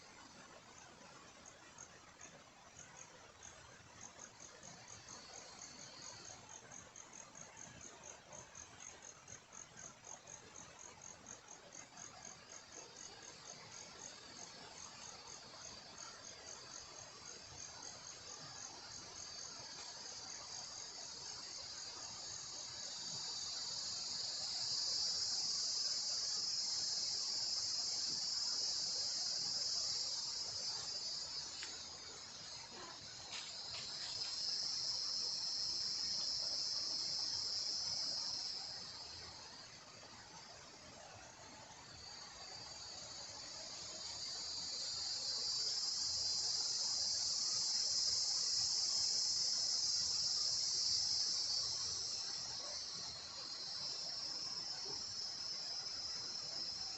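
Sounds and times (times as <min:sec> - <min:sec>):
cicada buzzing: 0:17.7 - 0:39.7, 0:42.1 - 0:56.9.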